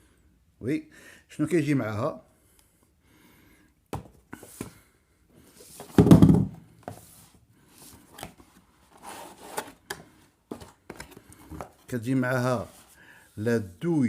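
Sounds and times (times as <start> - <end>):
packaging rustling and scraping: 6.9 - 13.0.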